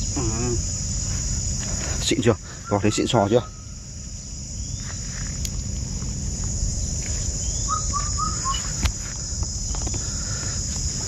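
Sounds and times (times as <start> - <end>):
high-pitched insect chorus: 0.0 - 11.0
bird chirping: 2.5 - 3.9, 6.8 - 8.9
low rumble: 3.5 - 11.0.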